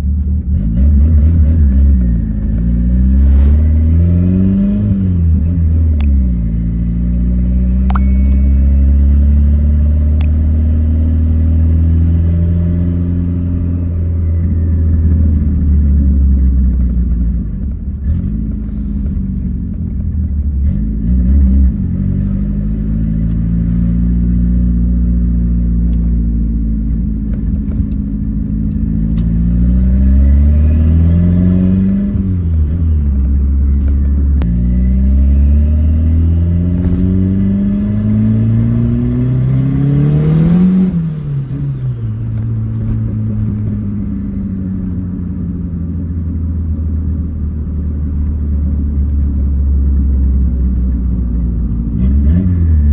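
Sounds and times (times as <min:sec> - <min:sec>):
car engine revving: 0:00.0 - 0:14.4, 0:20.4 - 0:46.2.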